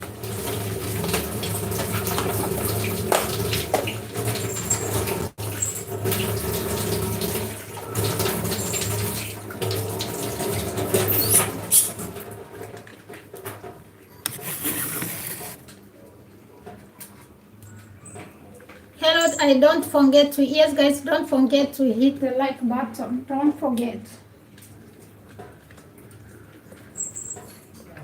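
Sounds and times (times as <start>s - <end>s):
tap water running into sink: 0.0s - 15.6s.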